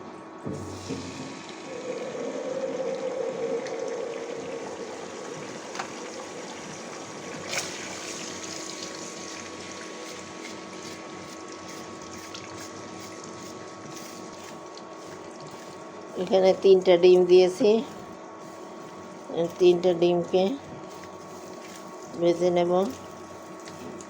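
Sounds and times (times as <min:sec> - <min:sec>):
eggs sizzling in oil: 0:00.6 - 0:16.7.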